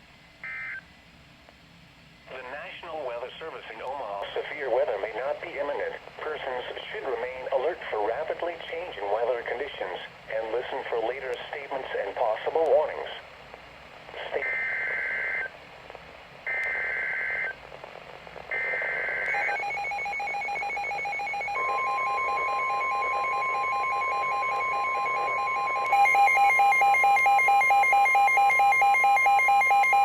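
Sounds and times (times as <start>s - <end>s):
warbling data tones: 18.5s - 30.0s.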